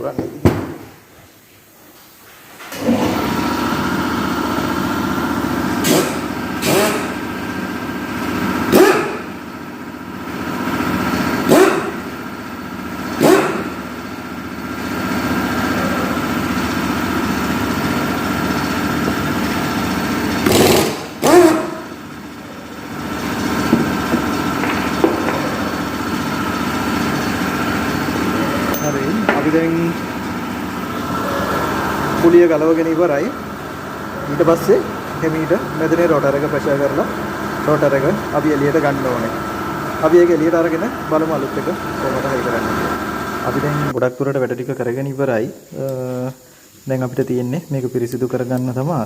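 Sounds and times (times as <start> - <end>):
machine running steadily: 2.8 - 44.0
sharp bursts of tool noise: 5.6 - 7.6, 8.5 - 9.4, 10.3 - 12.4, 13.0 - 14.3, 15.2 - 30.1.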